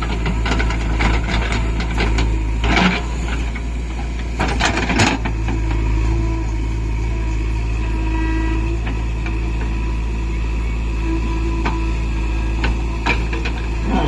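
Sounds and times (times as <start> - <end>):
rattling and scraping clatter: 0.0 - 6.0
heavy diesel machinery running: 0.0 - 14.0.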